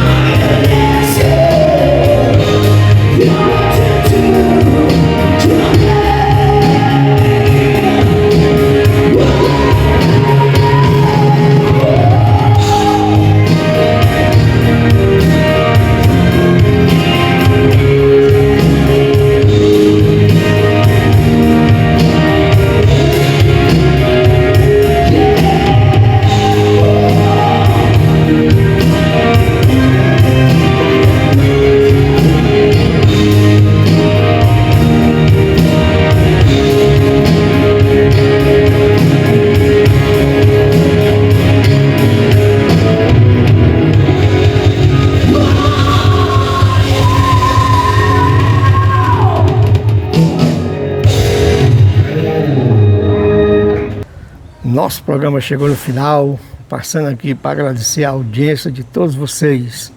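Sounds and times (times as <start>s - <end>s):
live band playing amplified music: 0.0s - 59.9s.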